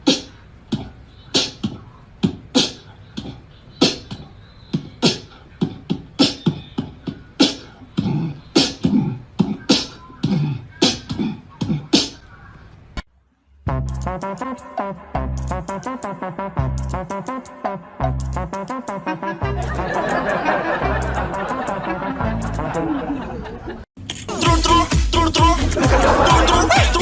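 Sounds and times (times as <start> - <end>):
beatbox-like clicks and pops: 0.0 - 4.2, 4.8 - 12.3
low vocal sounds: 0.0 - 12.4, 24.3 - 27.0.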